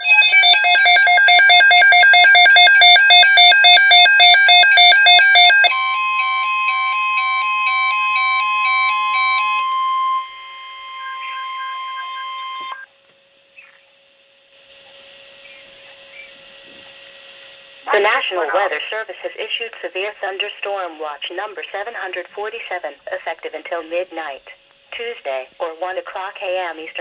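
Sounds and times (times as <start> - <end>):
steady alert tone: 0.0 - 12.8
two-tone electronic warble: 0.0 - 12.9.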